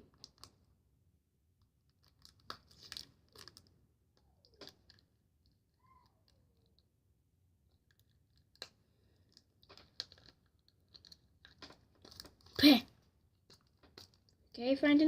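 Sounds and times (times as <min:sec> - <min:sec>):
plastic packaging clicks and crinkles: 0:00.0 - 0:00.6, 0:01.8 - 0:03.7, 0:04.4 - 0:05.6, 0:07.7 - 0:14.6.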